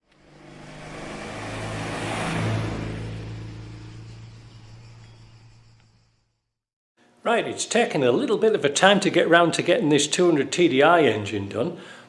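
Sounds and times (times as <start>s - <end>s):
vehicle engine humming: 0.0s - 6.4s.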